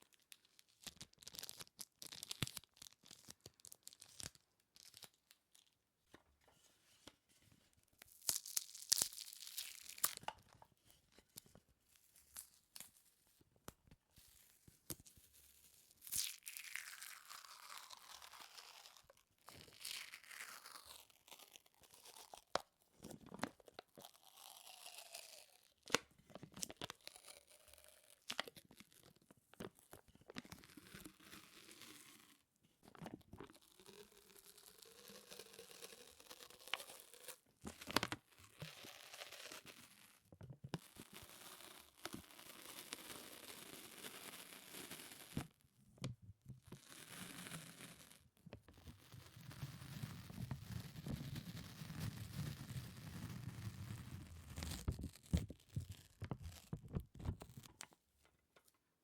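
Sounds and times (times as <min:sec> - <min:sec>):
sticky surface peeling and crackling: 0:49.4 - 0:57.8.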